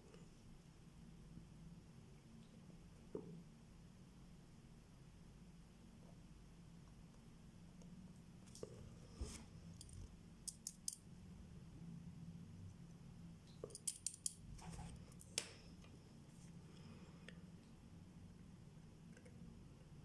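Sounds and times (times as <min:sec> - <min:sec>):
small metallic tool clicks: 0:09.8 - 0:11.0, 0:13.7 - 0:14.4.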